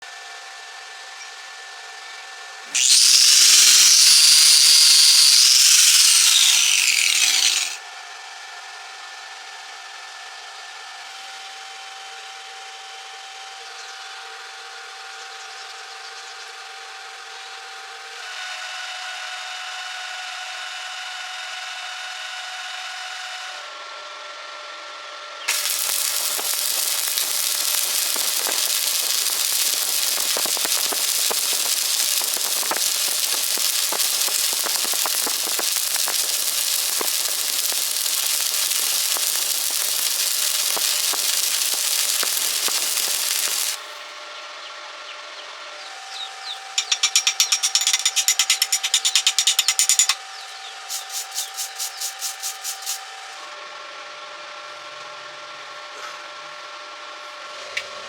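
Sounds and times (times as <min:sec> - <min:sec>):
welding arc crackling: 0:02.7 - 0:07.8, 0:25.5 - 0:44.0, 0:46.5 - 0:53.1
abrasive tool grinding metal: 0:02.8 - 0:07.8, 0:25.5 - 0:43.8, 0:46.8 - 0:53.1.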